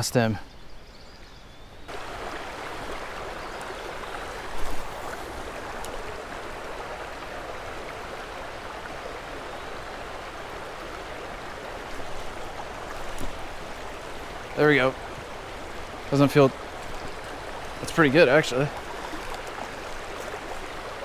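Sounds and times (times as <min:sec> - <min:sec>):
creek water rushing over rocks: 0:01.9 - 0:21.0.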